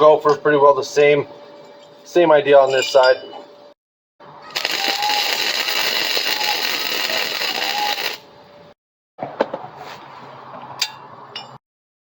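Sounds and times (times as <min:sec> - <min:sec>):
loud steady noise: 0:04.5 - 0:08.4.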